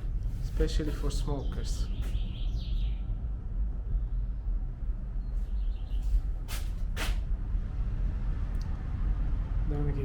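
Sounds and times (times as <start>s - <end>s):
low outdoor rumble: 0.0s - 10.0s
short hissing scrapes: 6.0s - 7.2s.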